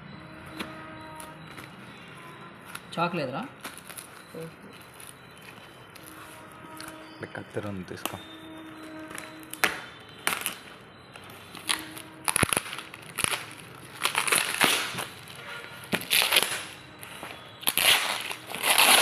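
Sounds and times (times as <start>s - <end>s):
scissors cutting packaging: 8.8s - 19.0s
packaging tearing and crinkling: 9.2s - 10.8s, 11.5s - 16.8s, 17.6s - 19.0s.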